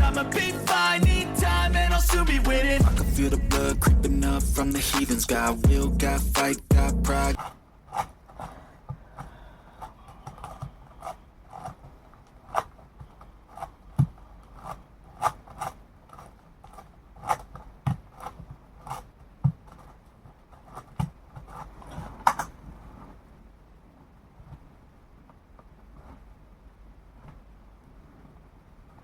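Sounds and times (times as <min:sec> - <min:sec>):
low thuds: 0:00.0 - 0:07.4.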